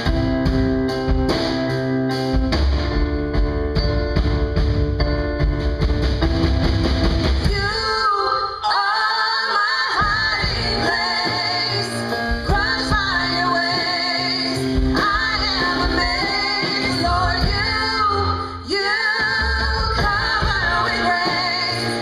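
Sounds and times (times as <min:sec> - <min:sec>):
guitar accompaniment: 0:00.0 - 0:08.0, 0:09.8 - 0:22.0
woman singing: 0:07.4 - 0:22.0.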